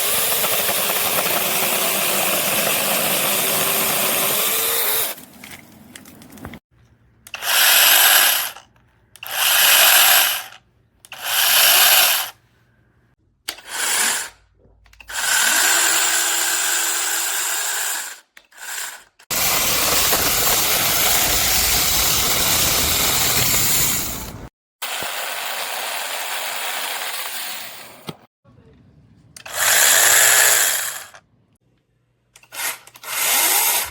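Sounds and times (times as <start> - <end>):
mini chainsaw whining: 0.0 - 5.2, 7.4 - 8.6, 9.2 - 12.4, 15.1 - 27.8, 29.4 - 31.2, 32.5 - 33.9.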